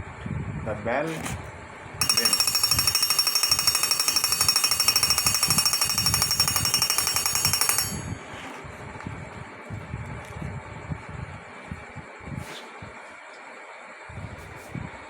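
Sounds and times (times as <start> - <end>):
electric alarm bell ringing: 2.0 - 8.6.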